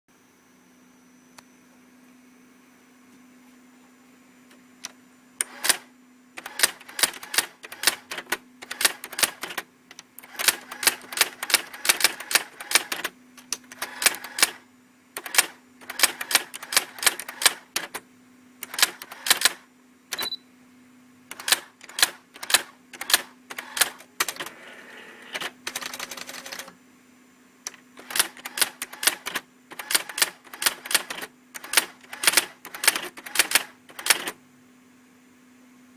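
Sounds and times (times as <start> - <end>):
typewriter motor hum: 5.4 - 18.0, 18.6 - 20.4, 21.3 - 26.8, 27.7 - 34.4
typewriter whirring: 5.4 - 18.0, 18.6 - 20.3, 21.3 - 26.8, 27.7 - 34.4.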